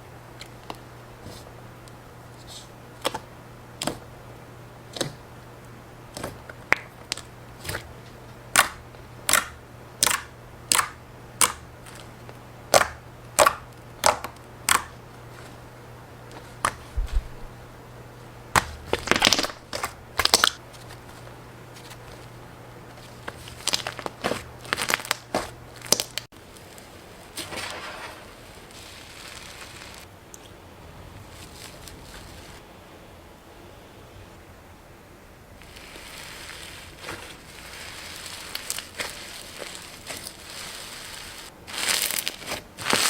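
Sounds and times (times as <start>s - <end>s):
faint low hum: 0.0s - 41.7s
brittle material crunching: 6.2s - 15.6s, 18.6s - 30.1s, 31.2s - 32.6s, 35.6s - 43.0s.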